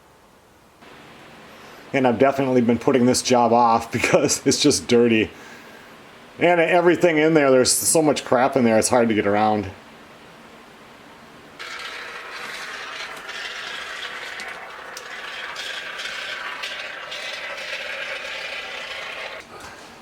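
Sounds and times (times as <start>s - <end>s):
spray foam sputtering hiss: 11.6s - 19.5s.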